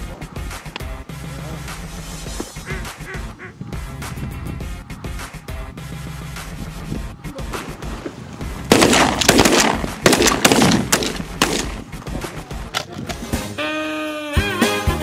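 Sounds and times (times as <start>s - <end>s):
background music: 0.0s - 15.0s
shotgun blasts: 8.6s - 12.0s.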